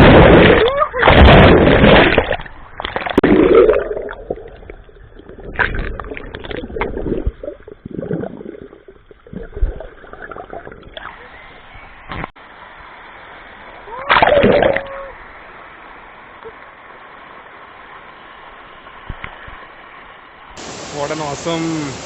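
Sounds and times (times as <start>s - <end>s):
loud splash: 0.0s - 4.5s
water gurgling and sloshing: 0.0s - 12.3s.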